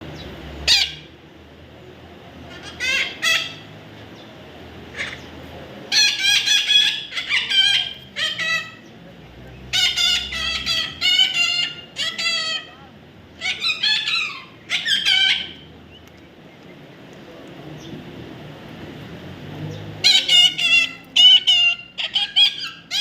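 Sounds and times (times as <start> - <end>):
parrot squawking: 0.6 - 1.1, 2.5 - 3.7, 4.9 - 5.3, 5.9 - 8.8, 9.7 - 12.8, 13.4 - 15.7, 20.0 - 23.0.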